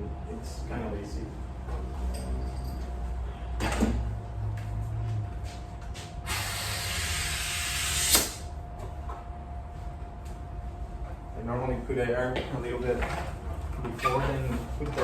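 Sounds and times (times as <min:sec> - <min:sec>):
air hissing into inner tube: 0:06.3 - 0:08.4.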